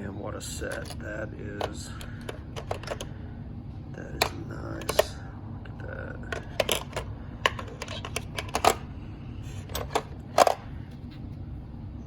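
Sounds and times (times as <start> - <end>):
tools knocking in metal case: 1.6 - 3.1, 6.4 - 8.8.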